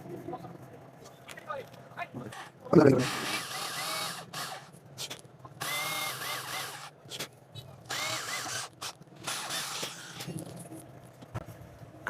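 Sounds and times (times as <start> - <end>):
small electric drill whining: 3.0 - 4.7, 5.6 - 6.9, 7.9 - 10.3.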